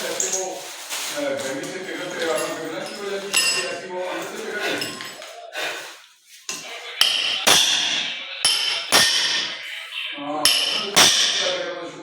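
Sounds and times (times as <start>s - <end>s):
hammer blows ringing: 7.0s - 9.8s, 10.4s - 11.8s.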